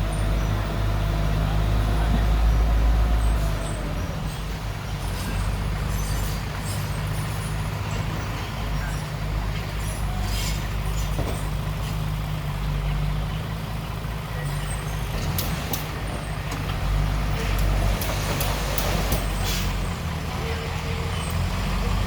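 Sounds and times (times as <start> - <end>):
heavy diesel machinery running: 0.0 - 22.0.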